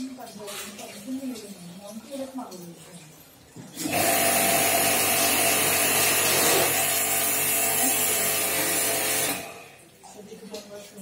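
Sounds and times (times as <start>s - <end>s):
pressure washer motor hum: 3.8s - 9.8s.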